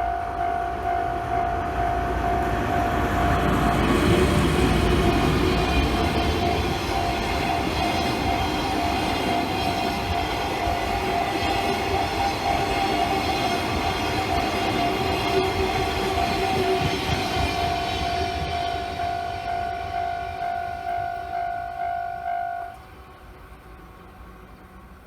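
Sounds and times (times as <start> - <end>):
crossing warning bell ringing: 0.0 - 23.4
train wheels rumbling on rails: 0.0 - 25.0.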